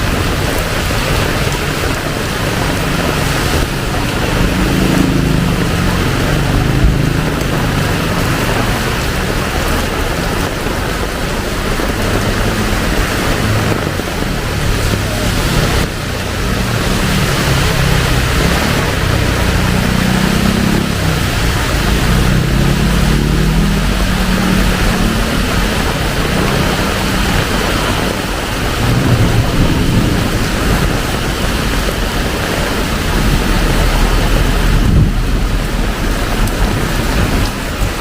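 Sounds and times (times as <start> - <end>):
heavy rain pouring: 0.0 - 38.0
low rumble: 0.0 - 38.0.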